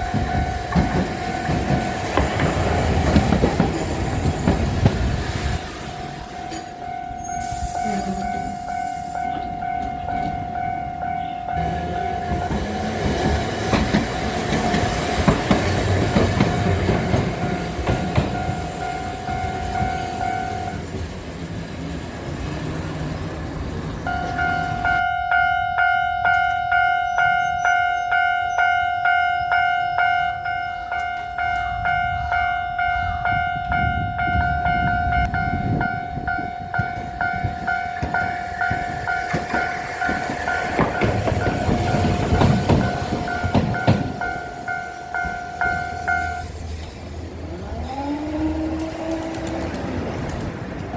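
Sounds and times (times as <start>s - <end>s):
train passing: 0.0s - 50.9s
level crossing alarm bell: 6.0s - 15.2s, 16.9s - 20.8s, 24.1s - 46.5s.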